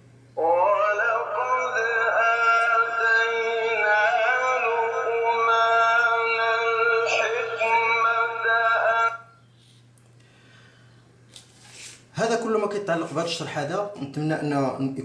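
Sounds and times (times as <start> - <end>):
music with sung melody: 0.4 - 9.3.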